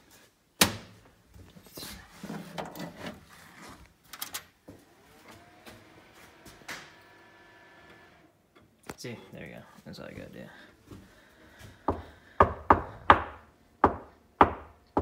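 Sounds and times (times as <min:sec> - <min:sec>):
hardware scraping: 0:01.6 - 0:03.9
knocking on hardware: 0:11.9 - 0:15.0.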